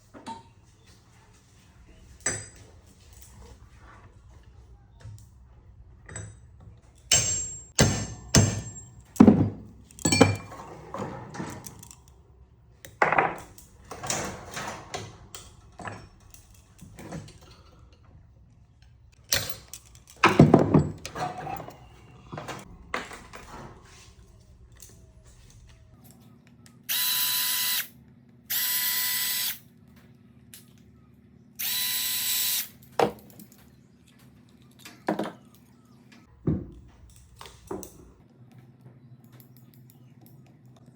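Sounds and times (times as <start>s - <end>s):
metal parts clinking: 6.1s - 12.2s, 12.8s - 23.7s
power tool running: 31.6s - 32.7s.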